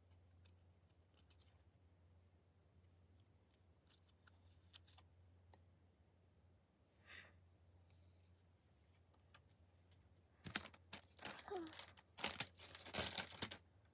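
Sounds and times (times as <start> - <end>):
plastic packaging crinkling: 10.4 - 13.6.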